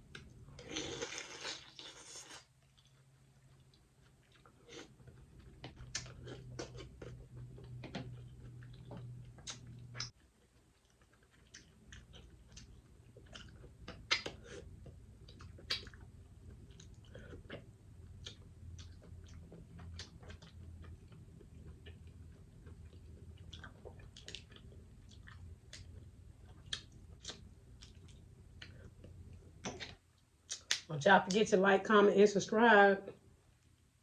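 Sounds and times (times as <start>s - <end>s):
person chewing and biting: 0.1s - 30.8s
wet mouth smacks and clicks: 13.8s - 14.4s, 15.6s - 16.0s, 29.6s - 30.9s.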